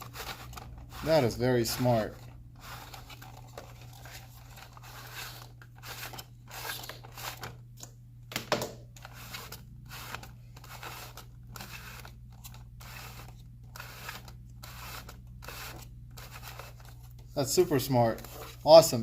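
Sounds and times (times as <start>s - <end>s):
plastic rustling and scraping: 0.0s - 7.5s, 9.0s - 18.9s.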